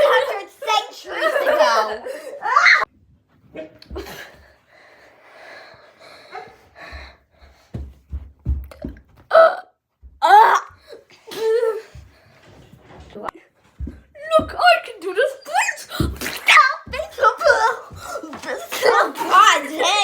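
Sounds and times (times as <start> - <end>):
dull thumps: 7.7 - 9.3, 15.9 - 19.5
child making silly vocal noises: 9.3 - 11.9.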